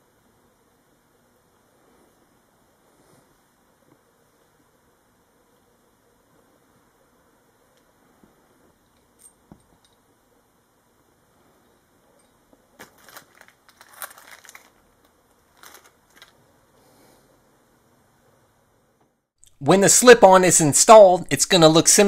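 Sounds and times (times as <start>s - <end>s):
light metallic clinks: 8.9s - 10.0s
packaging rustling: 12.8s - 16.4s.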